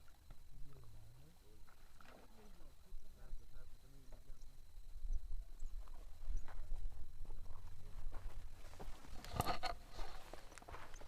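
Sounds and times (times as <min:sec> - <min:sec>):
crunching footsteps: 0:05.8 - 0:11.0.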